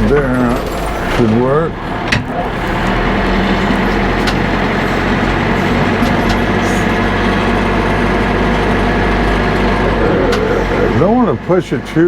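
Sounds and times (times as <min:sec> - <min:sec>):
backhoe engine running: 0:00.0 - 0:12.0.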